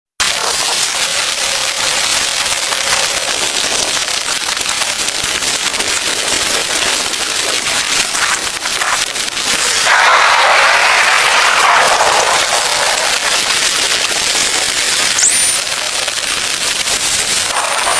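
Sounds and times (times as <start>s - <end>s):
heavy rain falling: 0.2s - 17.9s
loud rushing hiss: 9.6s - 17.9s.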